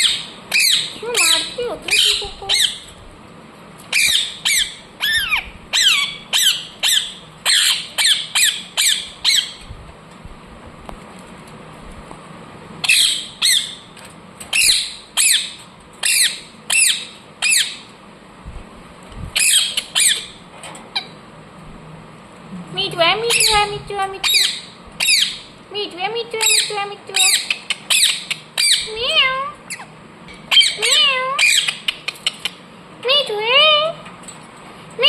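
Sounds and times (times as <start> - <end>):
parrot calling: 0.0 - 3.0, 3.9 - 9.7, 12.8 - 17.9, 19.4 - 21.2, 23.1 - 25.6, 26.4 - 32.7.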